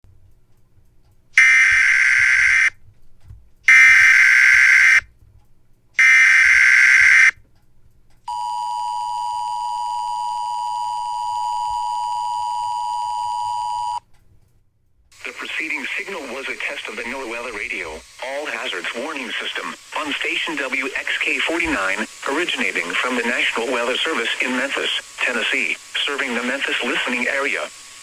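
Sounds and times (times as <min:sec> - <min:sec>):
buzzy data bursts: 0:01.4 - 0:02.8, 0:03.7 - 0:05.0, 0:06.0 - 0:07.3, 0:15.1 - 0:28.0
high warning alarm tone: 0:01.4 - 0:02.8, 0:03.7 - 0:05.1, 0:06.0 - 0:07.4, 0:08.3 - 0:14.1, 0:15.1 - 0:28.0.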